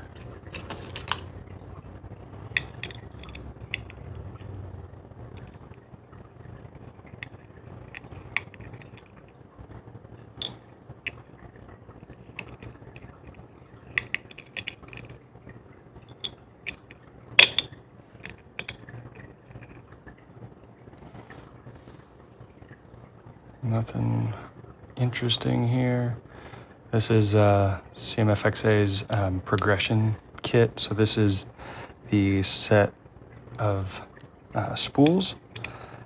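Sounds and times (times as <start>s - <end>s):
metal lock parts clicking: 0.0s - 1.4s, 2.5s - 4.0s, 14.0s - 15.2s, 16.1s - 18.8s, 28.8s - 30.0s, 34.9s - 35.8s.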